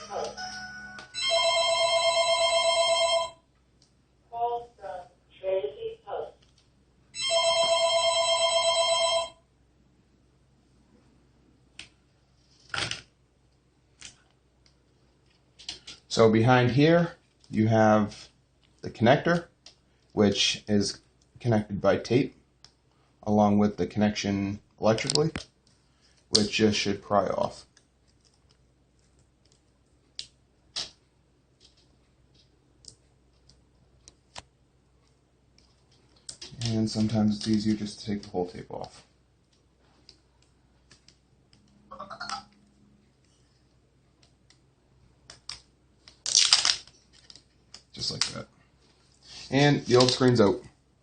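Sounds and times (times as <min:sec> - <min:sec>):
electronic telephone ringtone: 0:00.0 - 0:03.4, 0:07.2 - 0:09.4.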